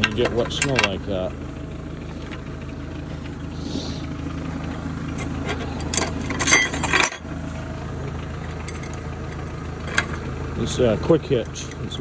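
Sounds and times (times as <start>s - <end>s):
metallic clanks and rattles: 0.0s - 1.3s, 2.0s - 3.4s, 4.4s - 7.7s, 8.4s - 12.0s
diesel tractor engine idling: 0.0s - 12.0s.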